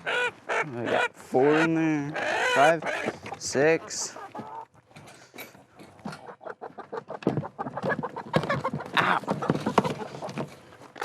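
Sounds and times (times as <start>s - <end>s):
hens clucking and squawking: 0.0s - 11.0s
knocks and rustles: 7.2s - 11.0s.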